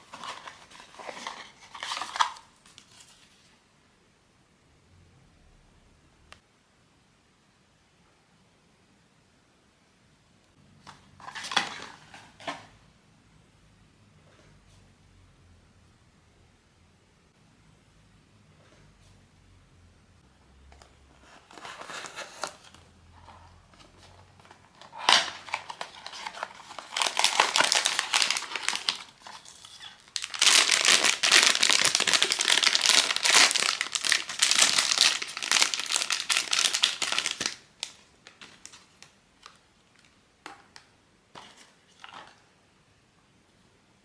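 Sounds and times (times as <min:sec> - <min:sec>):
packaging crinkling and rustling: 0:00.0 - 0:03.4, 0:10.8 - 0:12.7, 0:21.2 - 0:40.2
wrapping tearing: 0:24.8 - 0:38.8.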